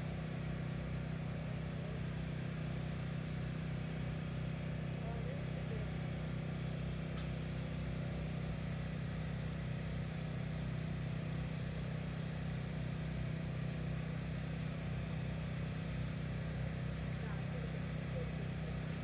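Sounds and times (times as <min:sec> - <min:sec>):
low mechanical hum: 0:00.0 - 0:19.0.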